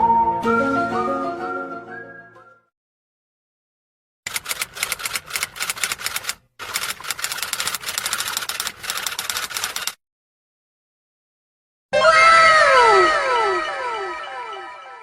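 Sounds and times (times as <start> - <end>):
keyboard typing clicks: 4.3 - 10.0.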